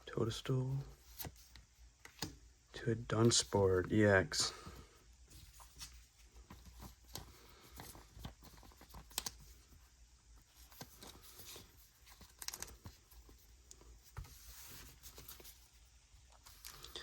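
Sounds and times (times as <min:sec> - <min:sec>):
foil wrappers crinkling: 0:10.7 - 0:13.7
trading cards clicking: 0:12.2 - 0:12.9.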